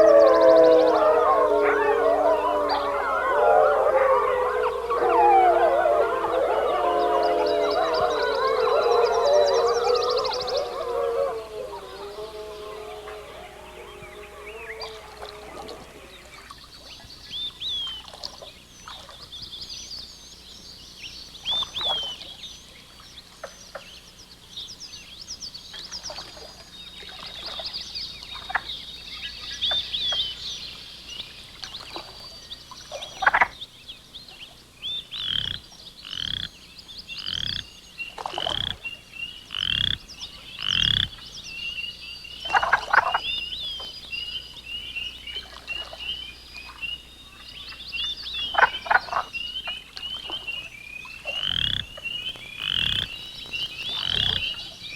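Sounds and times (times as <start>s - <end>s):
frogs chirping: 0.0s - 17.0s, 35.0s - 54.9s.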